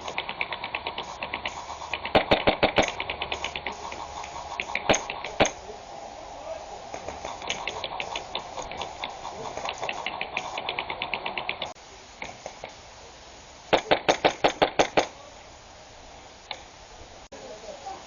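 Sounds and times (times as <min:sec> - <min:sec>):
rapid clicks: 0:00.0 - 0:05.6, 0:06.9 - 0:12.8
airsoft rifle firing: 0:00.0 - 0:05.7, 0:13.7 - 0:15.2
rustling: 0:00.0 - 0:18.0.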